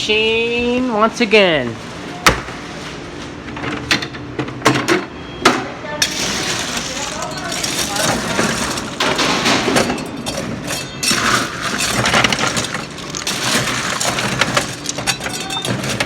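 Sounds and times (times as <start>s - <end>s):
ice cracking and clattering: 6.0s - 16.0s
ice machine rushing noise: 6.0s - 16.0s.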